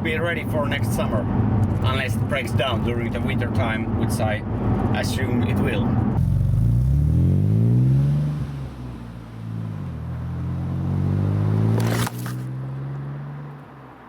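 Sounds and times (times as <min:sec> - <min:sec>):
car engine accelerating: 0:05.7 - 0:14.0.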